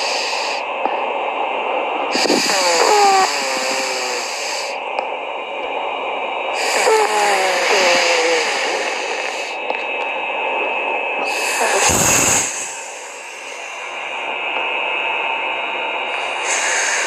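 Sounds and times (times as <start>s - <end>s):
person snoring: 2.1s - 4.8s, 6.6s - 9.6s, 11.2s - 13.8s, 16.1s - 17.0s
deep snort: 11.3s - 12.6s
wheezing whistle: 16.1s - 17.0s.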